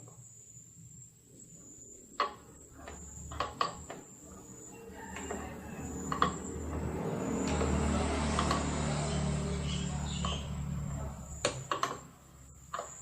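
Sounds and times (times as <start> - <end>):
faint high whine: 0.0 - 13.0
hard parts clicking and knocking: 2.1 - 4.2, 5.1 - 13.0.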